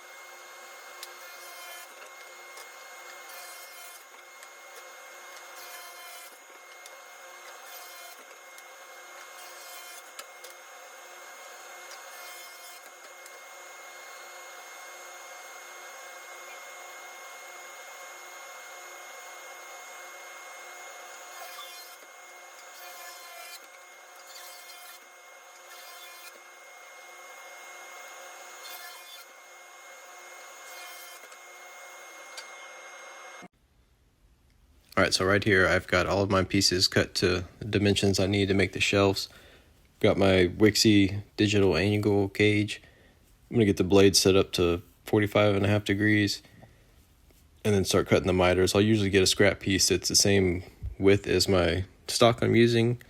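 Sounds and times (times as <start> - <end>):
table saw cutting plywood: 0.0 - 33.5.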